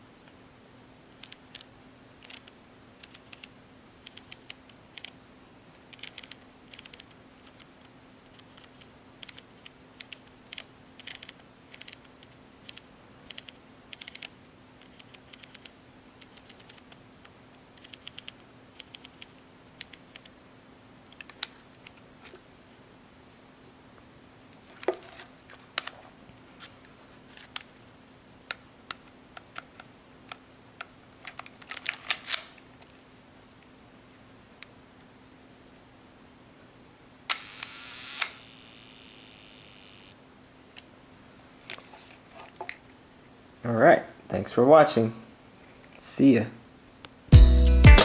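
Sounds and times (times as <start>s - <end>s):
camera controls and shutter clicking: 1.2s - 5.2s, 5.9s - 7.7s, 8.4s - 17.0s, 17.8s - 20.3s, 37.3s - 40.1s.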